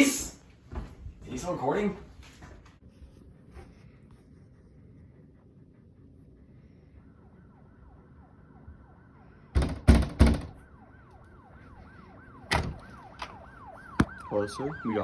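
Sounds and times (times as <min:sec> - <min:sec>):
police siren wailing: 0:06.6 - 0:15.0.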